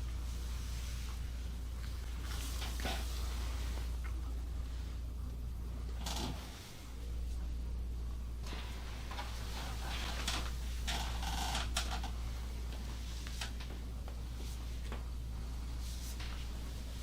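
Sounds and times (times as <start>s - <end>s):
rustling and brushing: 0.0s - 5.0s, 8.4s - 11.0s, 12.0s - 17.0s
steady low hum: 0.0s - 17.0s.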